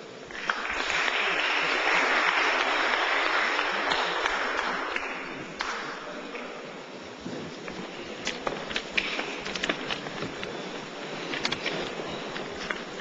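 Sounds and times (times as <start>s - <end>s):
audience applauding: 0.0s - 6.4s.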